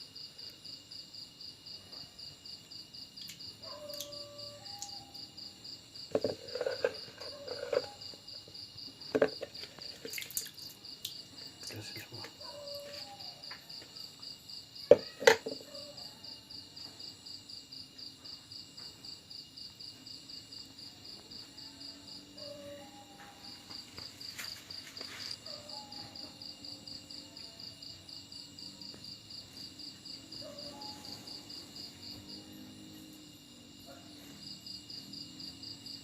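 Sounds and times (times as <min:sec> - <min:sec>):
pulsing insect chirp: 0:19.3 - 0:36.0.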